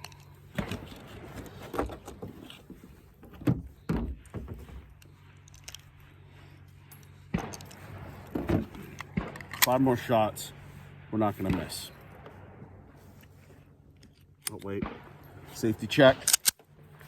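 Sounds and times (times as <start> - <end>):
firearm metallic clacks: 6.9 - 10.0, 13.9 - 15.4, 16.0 - 16.7.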